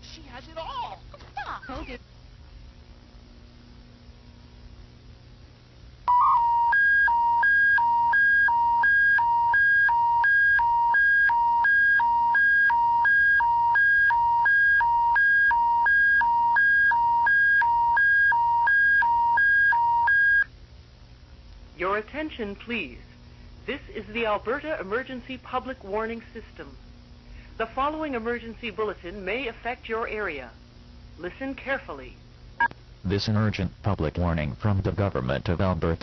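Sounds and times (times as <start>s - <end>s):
faint low hiss: 0.0s - 9.6s, 20.4s - 36.0s
alternating two-tone alert signal: 6.1s - 20.5s.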